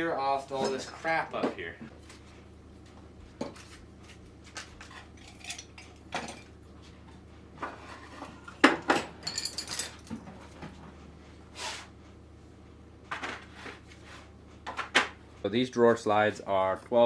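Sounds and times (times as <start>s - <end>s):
metal tools clinking: 5.1s - 6.5s, 9.2s - 10.2s.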